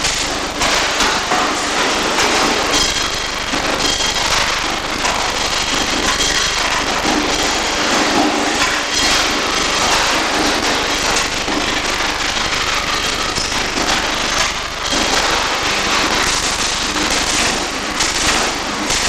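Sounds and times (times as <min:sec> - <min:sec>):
welding arc crackling: 0:00.0 - 0:19.0.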